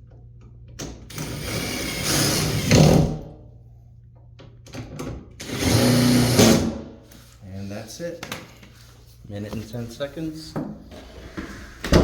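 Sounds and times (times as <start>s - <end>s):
power drill driving screws: 5.4s - 6.7s.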